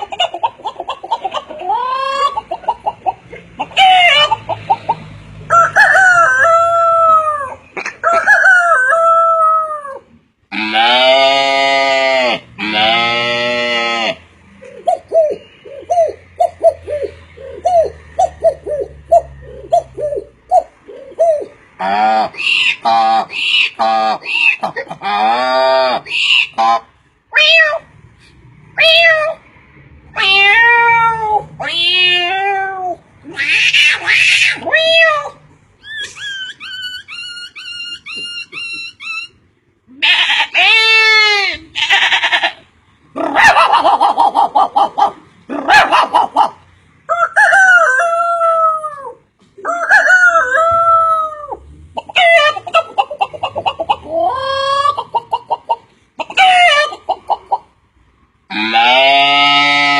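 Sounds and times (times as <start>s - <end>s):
man imitating animal calls: 8.9s - 27.8s, 30.2s - 46.6s, 47.9s - 55.3s, 58.5s - 59.9s.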